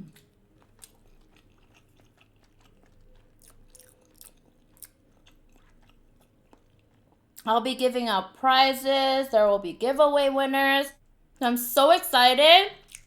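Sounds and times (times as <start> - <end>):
chewing with wet mouth clicks: 0.0 - 7.5, 12.8 - 13.0.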